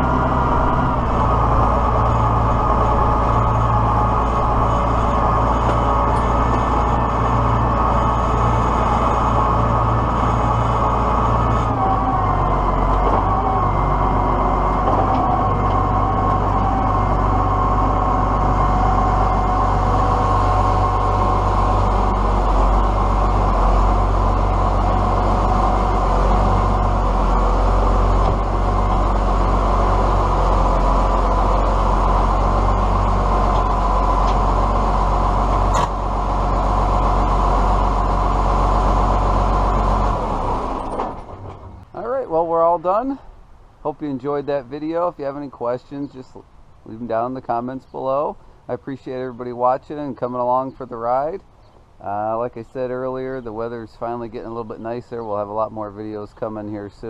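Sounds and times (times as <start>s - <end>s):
mechanical whine: 0.0s - 43.0s
tractor engine running: 0.0s - 57.0s.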